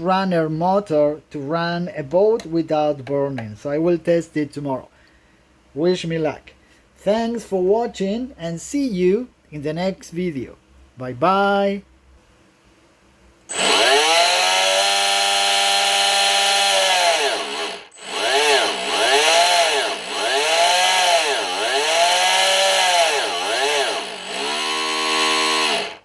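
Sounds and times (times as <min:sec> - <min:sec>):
electric motor whine: 0:13.5 - 0:26.0.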